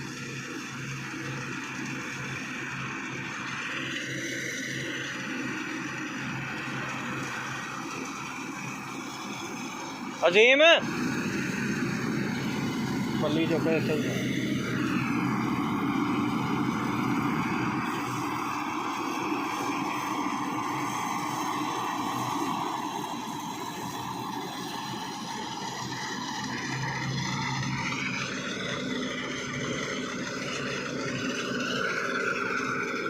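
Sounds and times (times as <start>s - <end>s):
farm machinery engine: 0.0s - 33.0s
high whine: 0.0s - 33.0s.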